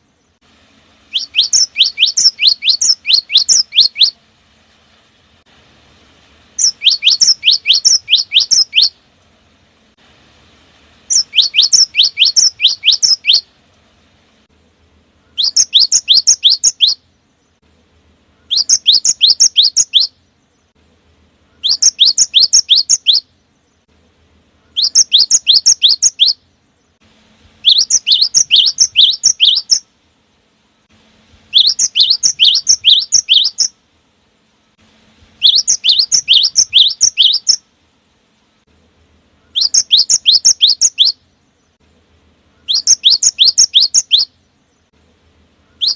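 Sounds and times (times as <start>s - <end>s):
bird singing sharp high notes: 1.1s - 4.2s, 6.6s - 9.0s, 11.1s - 13.5s, 15.2s - 17.0s, 18.4s - 20.2s, 21.5s - 23.3s, 24.6s - 26.4s, 27.6s - 29.8s, 31.5s - 33.8s, 35.4s - 37.6s, 39.4s - 41.2s, 42.6s - 44.4s, 45.6s - 45.9s.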